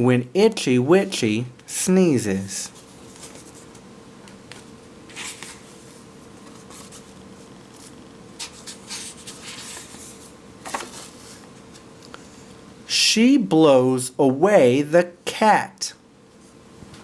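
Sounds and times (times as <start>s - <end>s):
faint electrical hum: 0.0s - 17.0s
book rustling: 2.7s - 3.8s, 4.5s - 12.3s.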